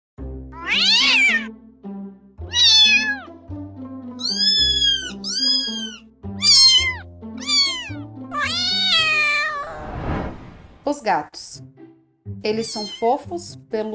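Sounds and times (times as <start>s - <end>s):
slow low background music: 0.2s - 9.7s, 10.4s - 13.9s
cat meowing: 0.6s - 1.5s, 2.5s - 3.3s, 4.2s - 9.8s, 12.6s - 13.2s.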